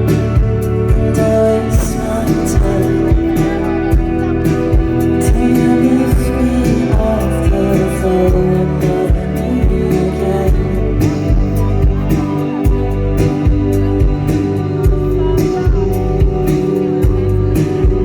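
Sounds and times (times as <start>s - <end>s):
live band playing dream-pop: 0.0s - 18.0s.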